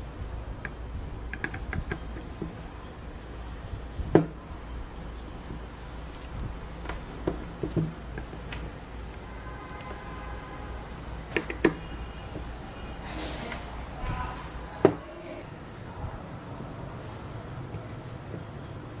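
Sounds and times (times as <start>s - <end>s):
steady low hum: 0.0s - 19.0s
parts knocking and clicking: 0.3s - 12.7s, 17.7s - 18.8s.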